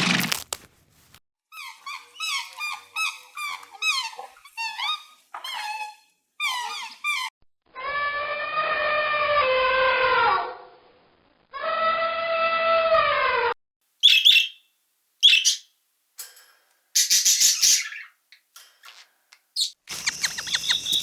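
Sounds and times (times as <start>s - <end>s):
animal squeaky calls: 19.6s - 21.0s.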